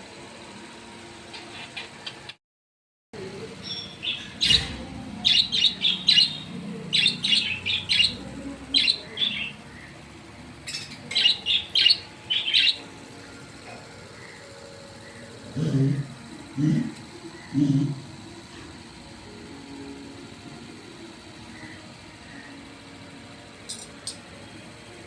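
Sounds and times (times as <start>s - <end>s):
budgerigars chirping: 3.7s - 9.9s, 10.7s - 12.8s.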